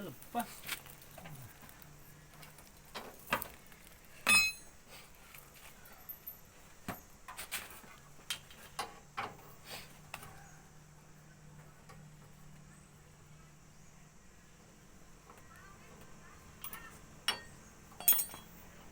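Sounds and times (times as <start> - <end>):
metal tools clinking: 4.2 - 4.8, 16.6 - 18.8.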